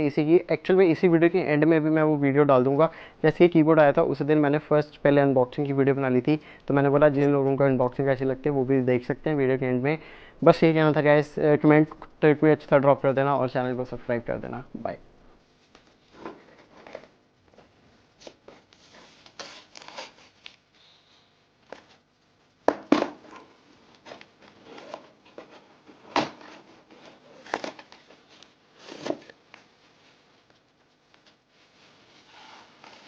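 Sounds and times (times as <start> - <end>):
packaging rustling and scraping: 15.7 - 20.8, 23.1 - 29.7, 31.2 - 33.0.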